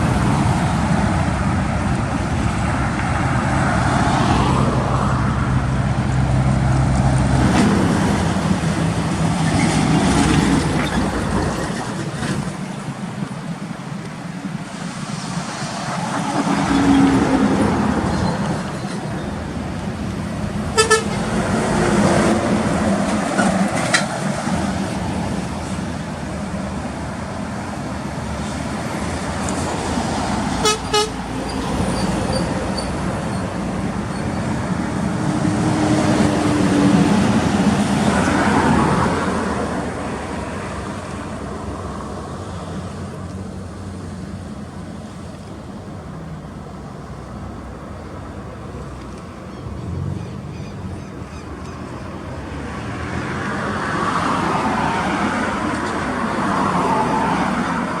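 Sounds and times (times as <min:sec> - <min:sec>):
traffic drone: 0:00.0 - 0:58.0
long truck horn tones: 0:06.7 - 0:09.0, 0:20.7 - 0:22.4, 0:30.5 - 0:32.9
short sharp horn blasts: 0:07.5 - 0:08.4, 0:20.8 - 0:21.3, 0:30.6 - 0:31.5.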